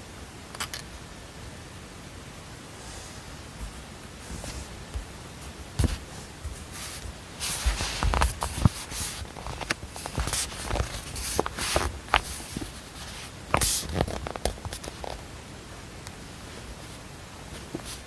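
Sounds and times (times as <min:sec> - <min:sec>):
faint steady hiss: 0:00.0 - 0:18.0.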